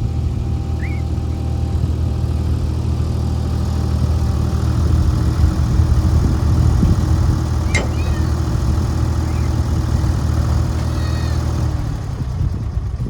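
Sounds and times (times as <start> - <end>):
engine idling: 0.0 - 13.0
short chirp: 7.7 - 9.7.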